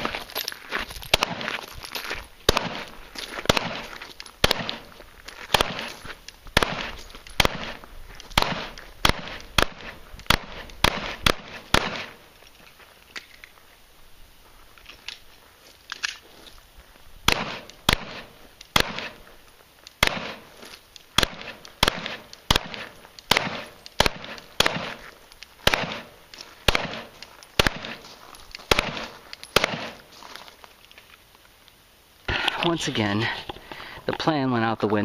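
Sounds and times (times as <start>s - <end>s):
pistol shots: 1.1s - 1.6s, 2.5s - 4.9s, 5.5s - 12.3s, 17.3s - 19.2s, 20.0s - 20.5s, 21.2s - 28.1s, 28.7s - 30.1s.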